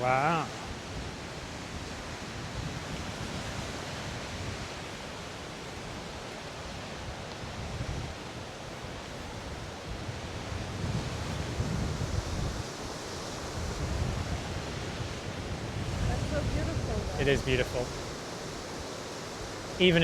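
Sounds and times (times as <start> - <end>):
waterfall rushing: 0.0 - 2.2, 11.2 - 20.0
wind buffeting microphone: 0.0 - 20.0.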